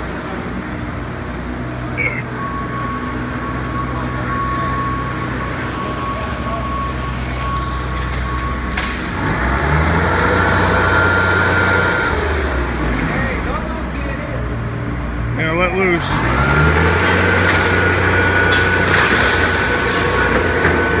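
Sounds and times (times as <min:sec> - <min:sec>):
engine idling and revving: 0:00.0 - 0:21.0.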